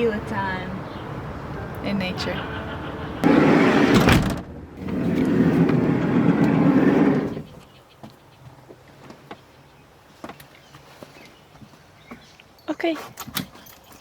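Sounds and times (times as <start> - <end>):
vehicle running noise: 0.0 - 7.4.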